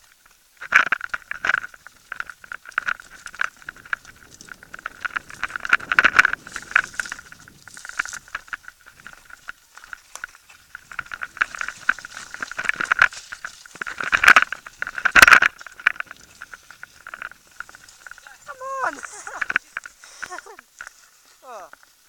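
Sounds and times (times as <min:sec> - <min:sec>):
bike rattling on dirt track: 0:00.0 - 0:21.2
bike hard jolts: 0:01.2 - 0:21.6.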